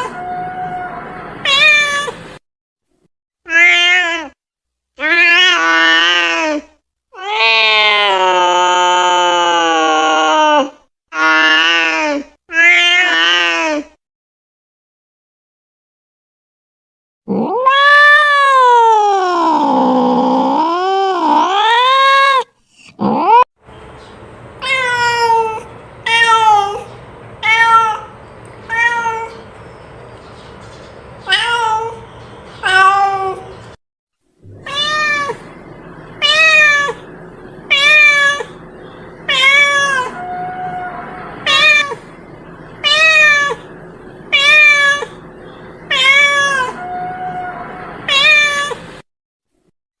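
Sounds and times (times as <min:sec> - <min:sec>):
cat meowing: 0:00.0 - 0:02.2, 0:03.5 - 0:04.4, 0:07.2 - 0:10.7, 0:17.3 - 0:20.0, 0:24.6 - 0:29.4, 0:31.2 - 0:32.0, 0:32.6 - 0:33.5, 0:34.5 - 0:35.6, 0:36.2 - 0:37.1, 0:37.7 - 0:38.6, 0:39.3 - 0:42.1, 0:42.8 - 0:43.7, 0:44.3 - 0:45.2, 0:45.9 - 0:48.9.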